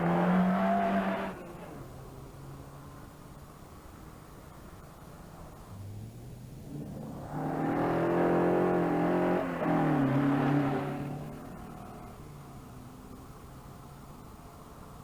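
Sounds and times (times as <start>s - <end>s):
rally car engine accelerating: 0.0s - 3.1s, 5.8s - 13.4s.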